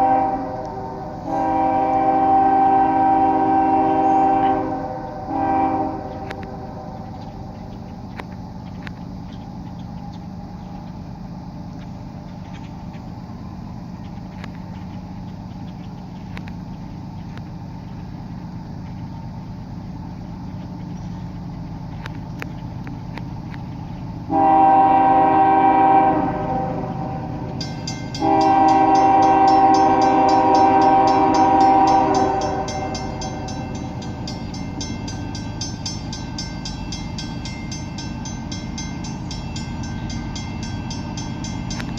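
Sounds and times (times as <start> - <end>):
train horn blasts: 0.0 - 7.3, 24.3 - 41.9
locomotives rumbling: 0.0 - 41.9
fast metallic ticking: 27.5 - 41.9.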